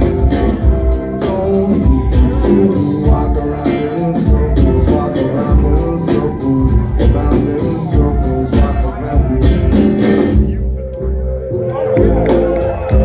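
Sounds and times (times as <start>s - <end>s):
steady drum beat: 0.0s - 11.2s, 12.0s - 13.0s
heavy bass line: 0.0s - 13.0s
live rock band playing: 0.0s - 13.0s.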